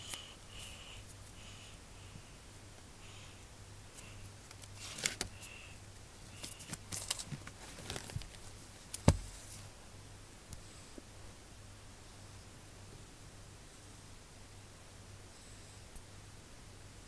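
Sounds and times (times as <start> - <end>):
steady low hum: 0.0 - 17.0
handling rustles and clicks: 4.4 - 5.5, 6.3 - 9.7.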